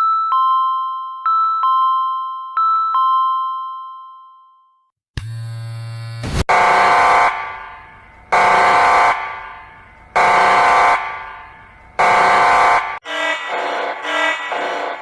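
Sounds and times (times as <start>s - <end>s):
buzzing alarm tone: 5.2s - 15.0s
alarm horn blasts: 6.4s - 15.0s.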